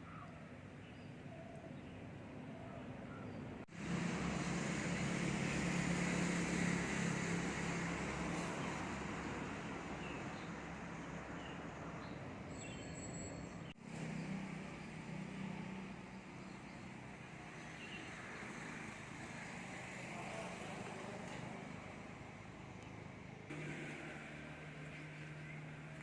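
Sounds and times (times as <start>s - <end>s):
low vehicle hum: 21.1s - 26.0s.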